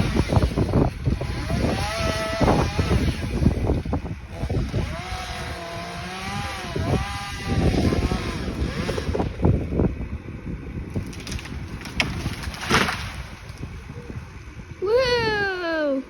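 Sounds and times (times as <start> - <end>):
chainsaw cutting: 0.0 - 9.7, 11.0 - 13.6
wind buffeting microphone: 0.0 - 16.0.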